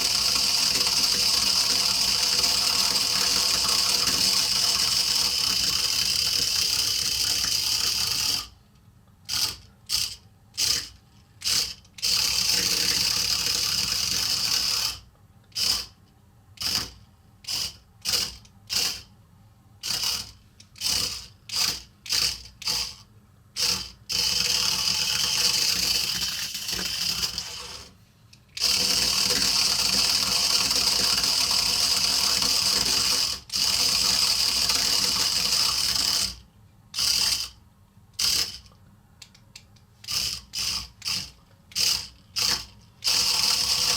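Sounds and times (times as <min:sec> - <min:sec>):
small electric motors whirring: 0:23.6 - 0:28.0, 0:40.0 - 0:43.9.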